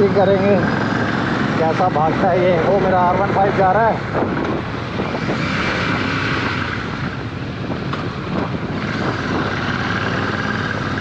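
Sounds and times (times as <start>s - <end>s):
motorcycle engine running: 0.0s - 11.0s
wind buffeting microphone: 0.3s - 11.0s.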